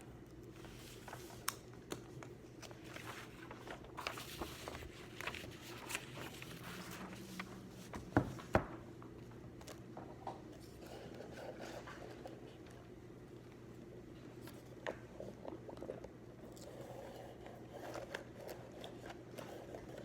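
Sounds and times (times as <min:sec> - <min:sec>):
faint steady hum: 0:00.0 - 0:20.0
paper rustling: 0:00.5 - 0:08.8.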